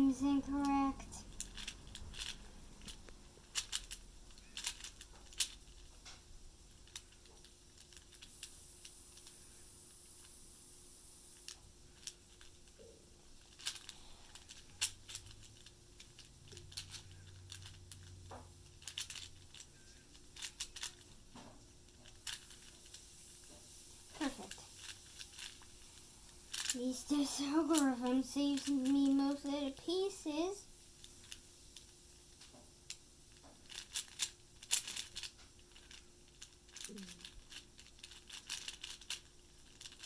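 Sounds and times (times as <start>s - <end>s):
puzzle cube plastic clicks: 0.2s - 6.2s, 13.4s - 21.1s, 27.5s - 30.1s, 32.9s - 40.0s.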